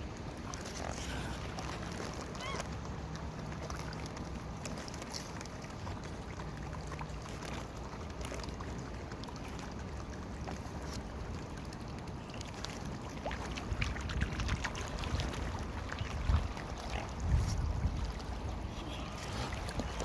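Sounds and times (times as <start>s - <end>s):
water noise: 0.0s - 20.0s
wind: 0.0s - 20.0s.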